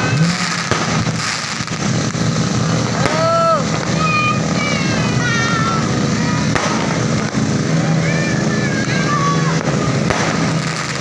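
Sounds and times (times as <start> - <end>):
fireworks bursting: 0.0 - 11.0
whistling fireworks: 0.0 - 11.0
sharp bang: 2.8 - 7.5, 9.4 - 11.0.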